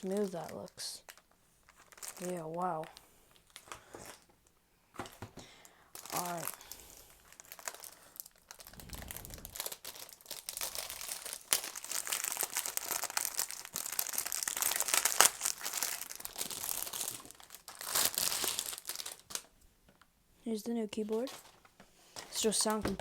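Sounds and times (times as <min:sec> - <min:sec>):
packaging crinkling and rustling: 0:00.0 - 0:20.1, 0:21.1 - 0:23.0.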